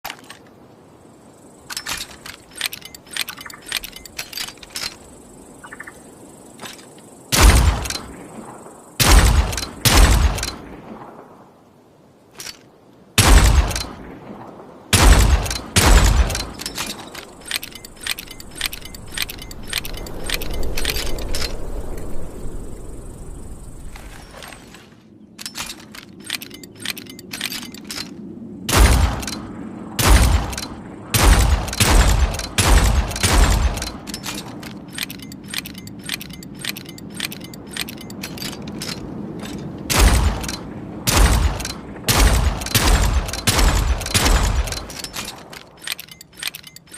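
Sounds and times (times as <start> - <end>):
revolver gunshots: 7.3 - 8.3, 9.0 - 10.8, 13.2 - 14.1, 14.9 - 17.4, 28.7 - 29.4, 30.0 - 34.0, 39.9 - 44.9.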